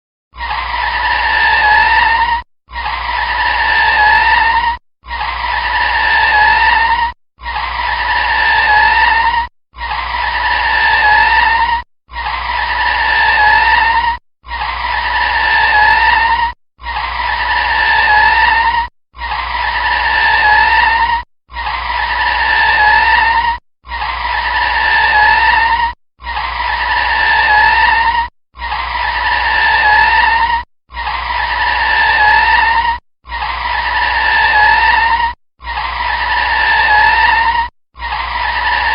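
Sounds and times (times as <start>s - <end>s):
car tyres screeching: 0.8s - 2.4s, 5.4s - 9.3s, 19.5s - 21.2s, 21.9s - 23.5s, 26.6s - 28.2s.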